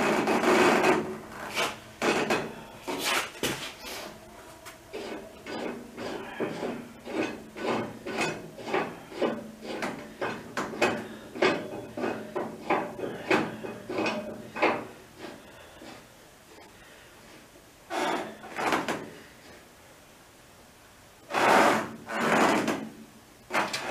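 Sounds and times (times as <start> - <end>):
metallic clanking and knocking: 4.9 - 14.9.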